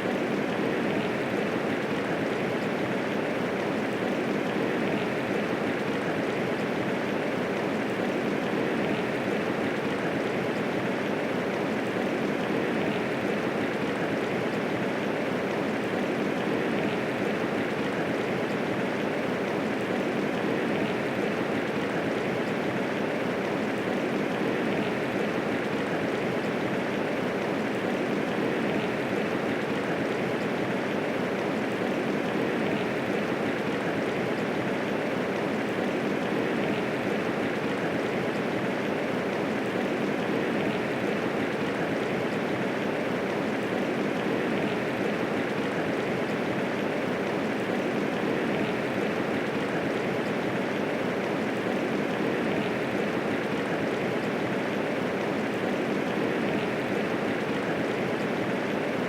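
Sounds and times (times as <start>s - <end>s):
steady rainfall: 0.0s - 59.0s.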